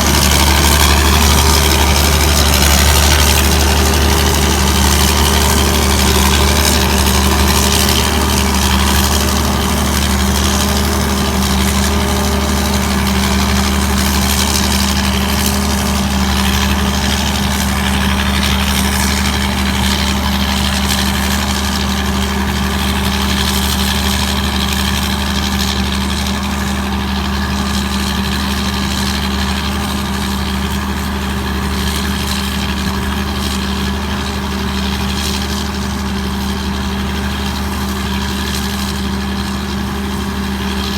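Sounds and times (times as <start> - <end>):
diesel engine hum: 0.0 - 40.9.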